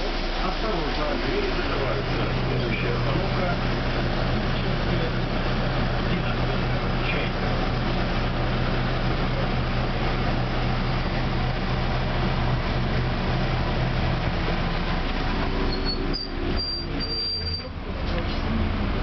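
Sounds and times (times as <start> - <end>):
tram rumbling on track: 0.0 - 19.0
high-pitched squeal: 15.6 - 17.7.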